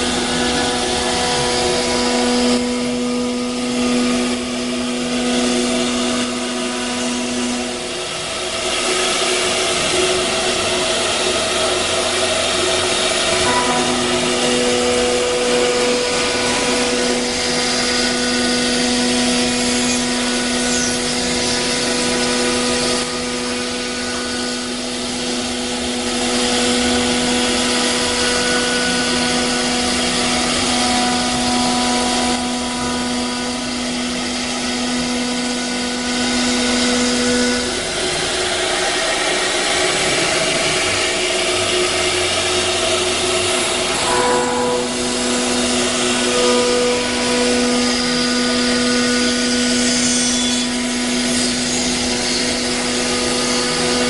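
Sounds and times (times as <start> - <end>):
router spindle whine: 0.0 - 54.0.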